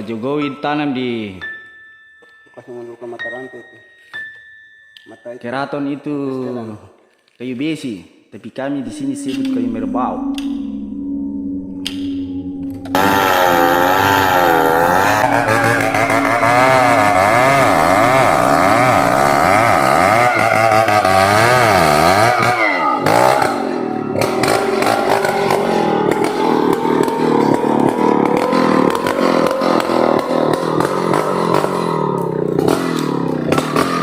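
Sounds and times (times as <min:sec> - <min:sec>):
chainsaw cutting wood: 0:13.0 - 0:15.5, 0:17.1 - 0:22.5, 0:25.5 - 0:34.0.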